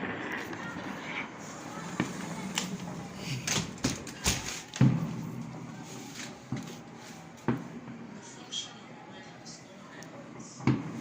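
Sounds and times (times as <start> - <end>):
fireworks bangs: 0.0 - 8.1.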